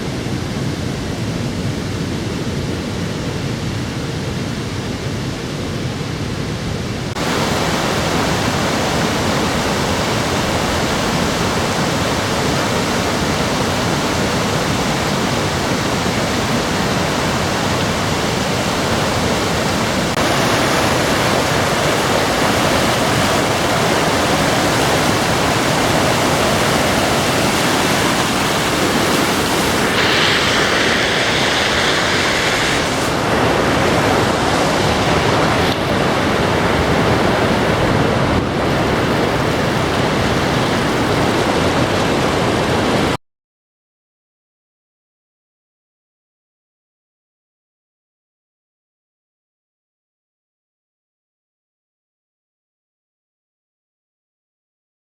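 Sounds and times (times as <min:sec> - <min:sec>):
rushing river and waterfalls: 0:00.0 - 0:43.2.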